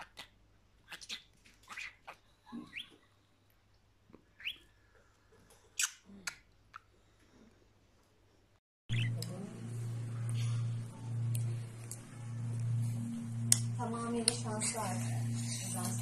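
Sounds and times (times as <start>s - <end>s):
budgerigars chirping: 0.9s - 3.0s, 4.4s - 4.6s, 8.9s - 9.2s.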